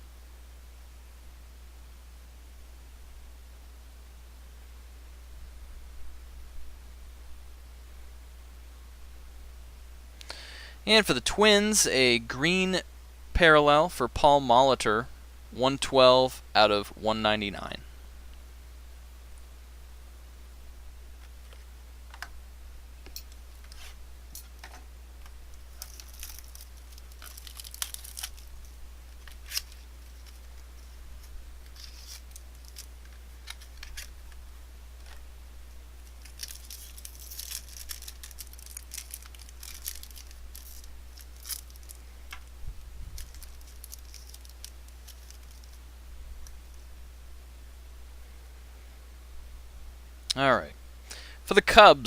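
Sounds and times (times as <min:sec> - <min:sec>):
low electrical hum: 0:00.0 - 0:52.0
card packaging rustling and tearing: 0:25.6 - 0:34.2, 0:36.0 - 0:42.5, 0:43.1 - 0:45.8.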